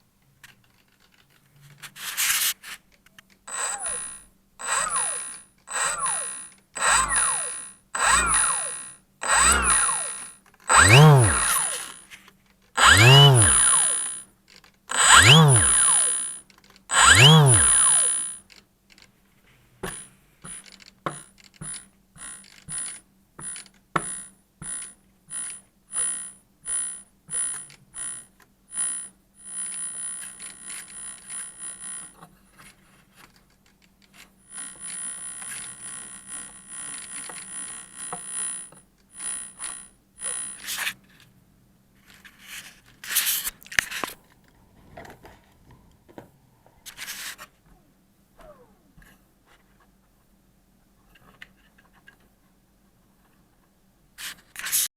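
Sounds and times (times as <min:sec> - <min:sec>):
electric motor whining: 0:03.5 - 0:12.0, 0:12.8 - 0:14.2, 0:14.9 - 0:18.3
motor buzzing: 0:03.5 - 0:12.0, 0:12.8 - 0:14.2, 0:14.9 - 0:18.3.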